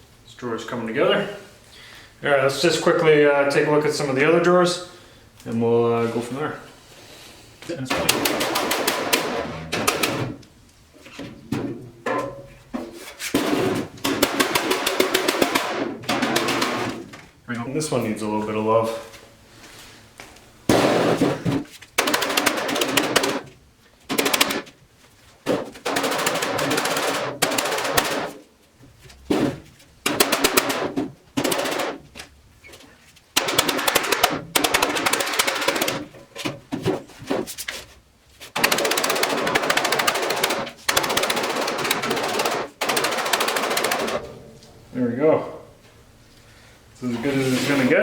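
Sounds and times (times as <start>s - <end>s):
knocks on metal: 7.9s - 10.4s, 13.4s - 17.1s
power tool hammering on metal: 7.9s - 10.4s, 13.4s - 17.1s, 20.7s - 23.5s, 24.1s - 24.7s, 25.5s - 28.4s, 30.1s - 32.1s, 33.4s - 36.1s, 38.6s - 44.3s.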